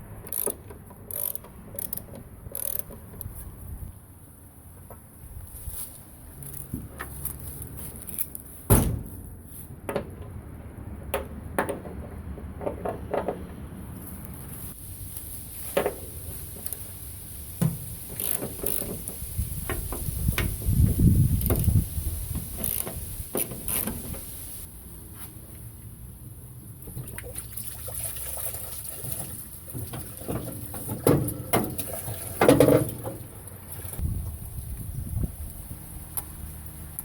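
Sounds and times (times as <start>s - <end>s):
clicks and rattles of hand work: 0.1s - 3.4s, 17.6s - 20.6s, 22.4s - 24.3s.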